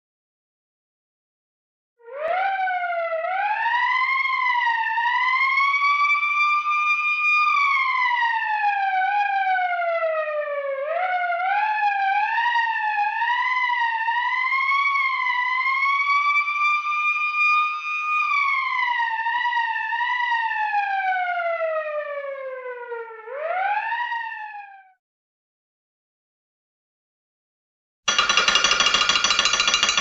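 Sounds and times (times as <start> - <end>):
siren-like wailing tone: 2.0 - 25.0.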